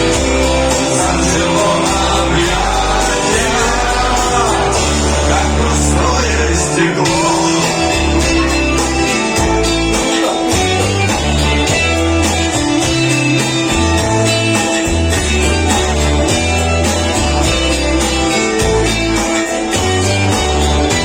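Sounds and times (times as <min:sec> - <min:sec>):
bass line: 0:00.0 - 0:21.0
strummed guitar: 0:00.0 - 0:21.0.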